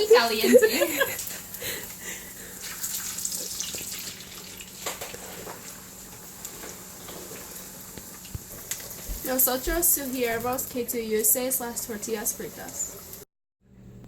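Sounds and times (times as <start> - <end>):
tortillas sizzling in hot oil: 0.0 - 13.2
oil crackling and popping: 1.0 - 10.9.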